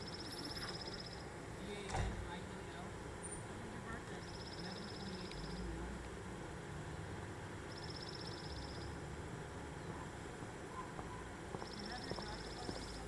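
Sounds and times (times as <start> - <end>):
street background noise: 0.0 - 13.0
small bird trilling: 4.2 - 5.7, 7.7 - 9.0, 11.6 - 13.0.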